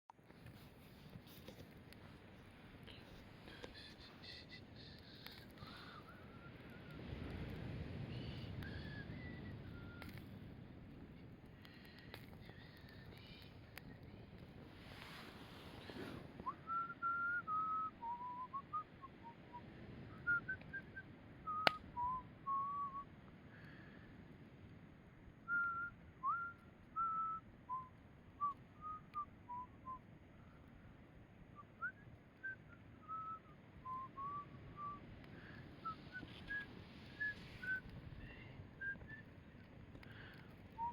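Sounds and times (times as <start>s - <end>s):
person whistling a tune: 5.4s - 7.0s, 8.1s - 10.2s, 16.4s - 23.1s, 25.5s - 30.0s, 31.6s - 39.3s, 40.1s - 40.9s
sharp crack: 21.6s - 22.0s.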